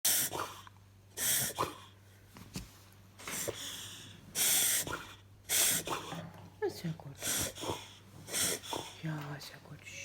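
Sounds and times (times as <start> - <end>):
dog reverse sneezing: 4.4 - 6.2, 7.2 - 9.0.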